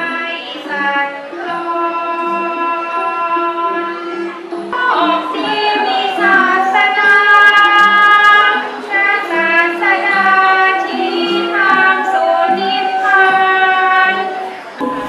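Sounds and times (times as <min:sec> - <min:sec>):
child singing: 0:00.0 - 0:15.0
musical accompaniment: 0:00.0 - 0:15.0.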